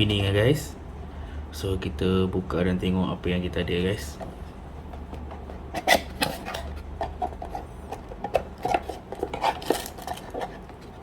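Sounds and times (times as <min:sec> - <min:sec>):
low steady hum: 0:00.0 - 0:11.0
packaging clicks and rustles: 0:04.9 - 0:11.0.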